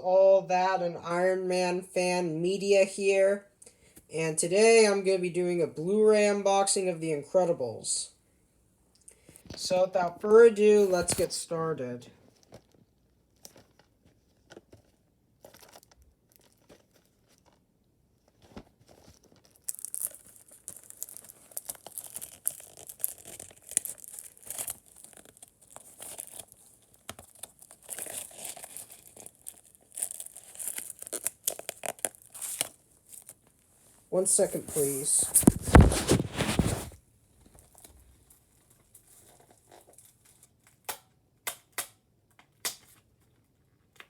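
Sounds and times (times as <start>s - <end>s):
plastic wrap crinkling: 9.2s - 11.5s, 12.2s - 41.1s.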